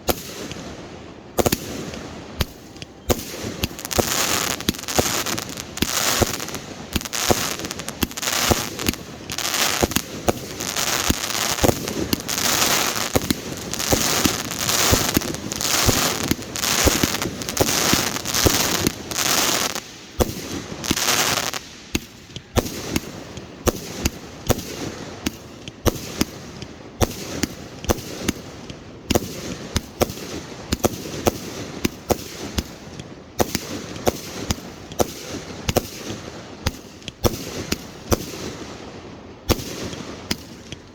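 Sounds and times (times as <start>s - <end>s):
sharp firework bangs: 1.4s - 26.4s
firework shell bursts crackling: 2.4s - 25.4s.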